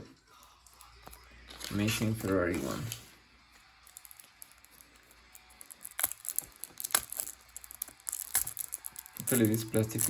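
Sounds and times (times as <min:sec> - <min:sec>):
plastic wrapping crackling: 0:03.8 - 0:10.0.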